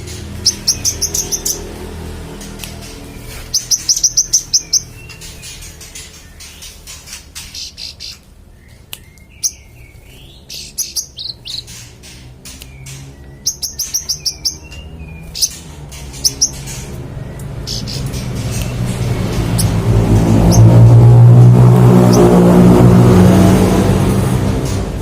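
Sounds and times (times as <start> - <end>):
songbird chirping and whistling: 0.4 - 1.7, 2.6 - 11.8, 12.6 - 20.8.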